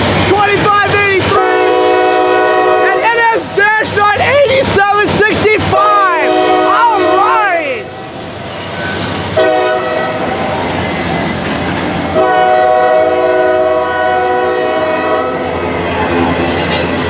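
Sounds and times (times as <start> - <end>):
passing train noise: 0.0 - 17.0
locomotive air horn blasts: 1.3 - 3.1, 5.7 - 8.0, 9.4 - 10.6, 12.2 - 15.6.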